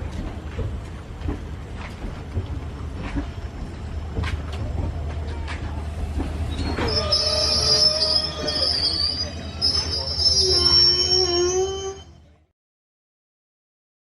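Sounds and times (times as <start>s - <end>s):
train rumbling: 0.0s - 12.4s
train wheels squealing: 6.4s - 12.3s.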